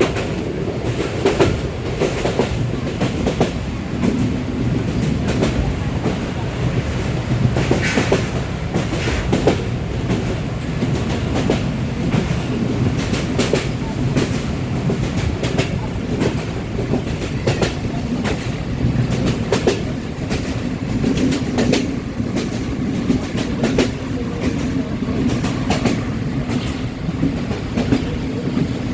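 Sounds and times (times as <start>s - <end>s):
train rumble: 0.0s - 28.9s
wheels clicking over rail joints: 0.0s - 28.9s.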